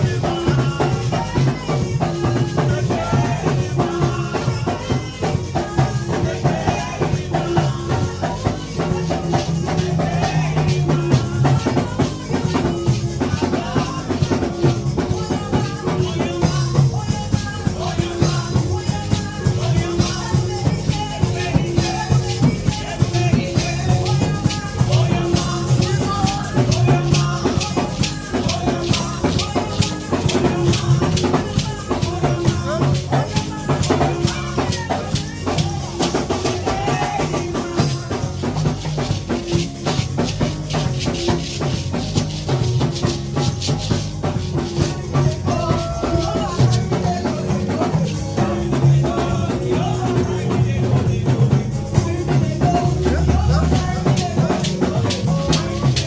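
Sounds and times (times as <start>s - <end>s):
drum kit beat: 0.0s - 56.0s
live praise band music: 0.0s - 56.0s
shaker-like percussion: 0.0s - 56.0s.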